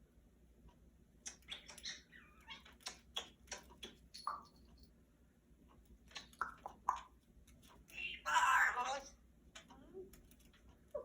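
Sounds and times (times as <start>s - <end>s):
parrot clicks and squeaks: 1.2s - 4.6s, 6.0s - 7.2s.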